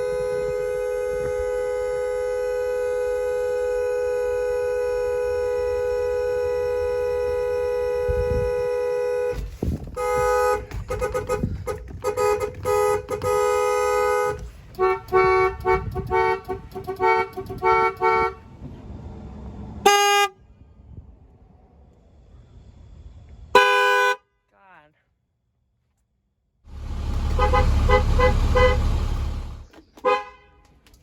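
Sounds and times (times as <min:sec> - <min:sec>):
school bus horn honking: 0:00.0 - 0:18.6, 0:19.8 - 0:20.4, 0:23.5 - 0:24.3, 0:26.7 - 0:30.6.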